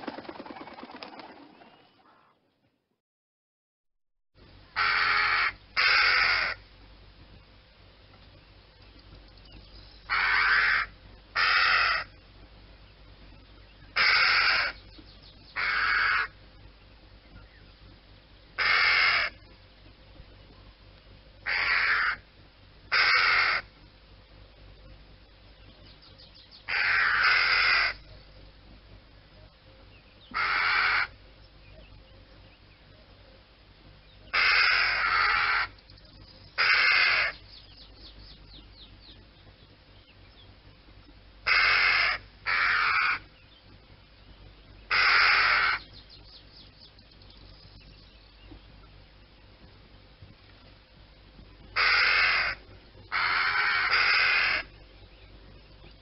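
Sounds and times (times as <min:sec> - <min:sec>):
crow cawing: 0:04.8 - 0:06.6, 0:10.1 - 0:12.2, 0:14.0 - 0:14.8, 0:15.6 - 0:16.4, 0:18.6 - 0:19.4, 0:21.4 - 0:22.2, 0:22.9 - 0:23.7, 0:26.7 - 0:28.0, 0:30.3 - 0:31.2, 0:34.3 - 0:35.8, 0:36.6 - 0:37.4, 0:41.4 - 0:43.3, 0:44.9 - 0:45.9, 0:51.8 - 0:54.8.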